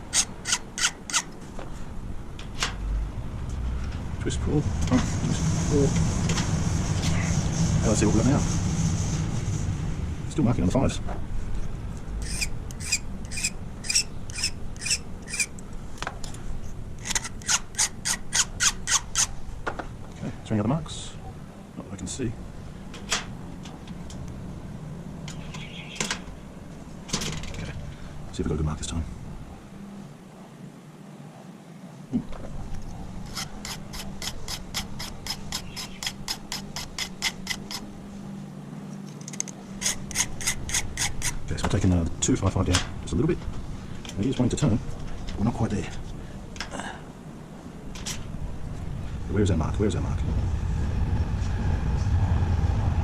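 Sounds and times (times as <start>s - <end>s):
steady low hum: 0.0s - 53.0s
hand file rasping on metal key: 0.1s - 1.3s, 12.2s - 15.6s, 17.0s - 19.3s, 33.3s - 37.8s, 39.8s - 41.4s.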